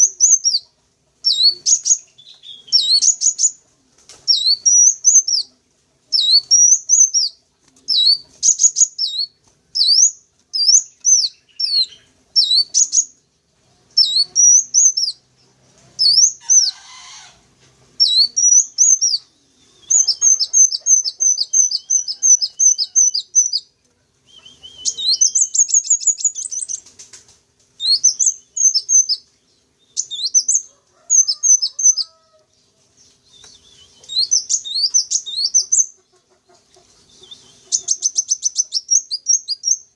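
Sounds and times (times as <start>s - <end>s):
bird chirping: 0.0s - 3.6s, 4.3s - 17.4s, 18.0s - 27.0s, 27.8s - 39.9s
bird trill: 1.2s - 3.6s, 4.3s - 5.5s, 6.1s - 13.2s, 14.0s - 15.2s, 16.0s - 17.4s, 18.0s - 23.7s, 24.3s - 26.8s, 27.8s - 32.4s, 33.3s - 36.1s, 37.0s - 39.9s.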